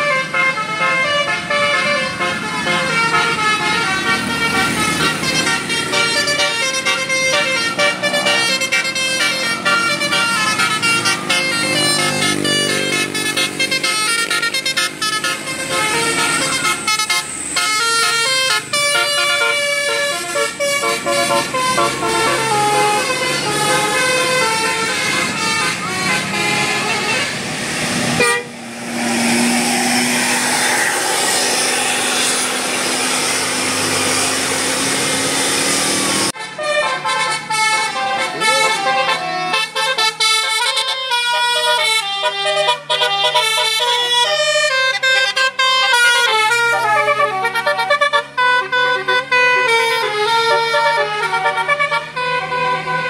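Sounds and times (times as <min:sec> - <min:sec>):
multi-tone bus horns playing tunes: 0:00.0 - 0:53.0
hissing wash with low tone: 0:27.5 - 0:36.2.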